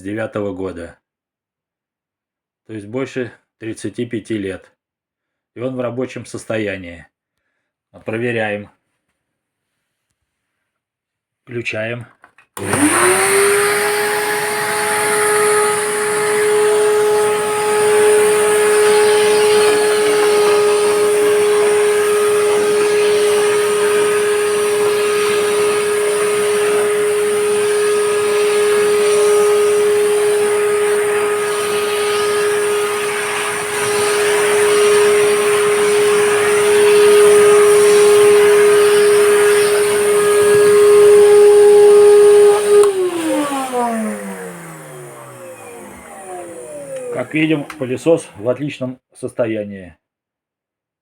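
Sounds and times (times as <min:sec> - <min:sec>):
vacuum cleaner motor whine: 0:12.6 - 0:48.4.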